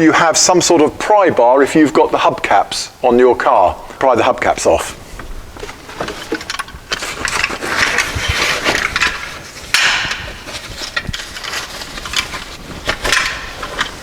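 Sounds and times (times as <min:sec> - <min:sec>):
items rustling and knocking: 0:03.8 - 0:14.0.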